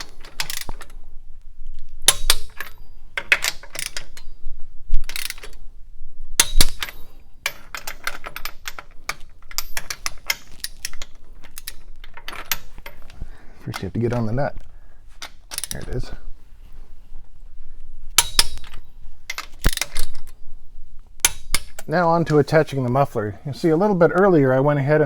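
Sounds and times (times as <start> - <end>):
ratchet clicks: 0.0 - 0.9, 2.0 - 4.3, 5.0 - 5.6, 6.4 - 13.0
metal clinks: 6.4 - 13.1, 18.2 - 20.3.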